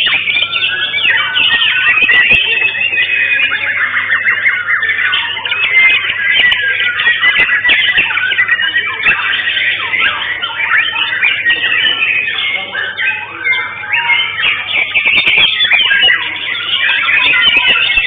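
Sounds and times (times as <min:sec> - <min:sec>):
songbird singing varied whistles: 0:00.0 - 0:18.0.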